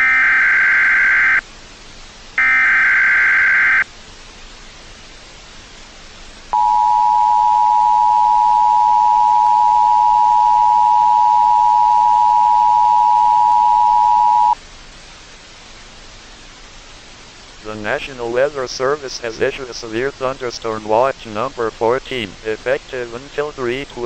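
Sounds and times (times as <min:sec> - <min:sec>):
background hiss: 0:00.0 - 0:24.0
two-tone alert signal: 0:02.4 - 0:03.8, 0:06.6 - 0:14.6.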